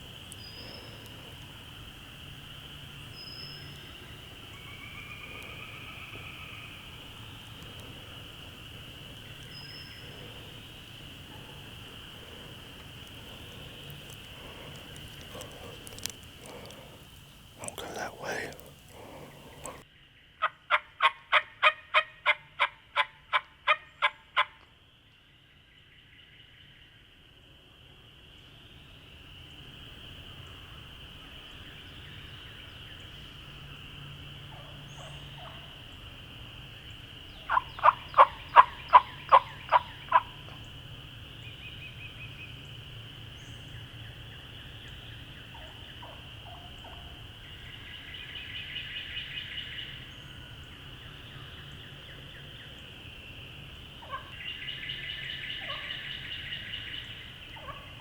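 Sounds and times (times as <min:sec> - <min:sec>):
turkey rattling calls: 0:37.5 - 0:40.3
turkey yelps: 0:37.5 - 0:40.3, 0:54.0 - 0:54.4.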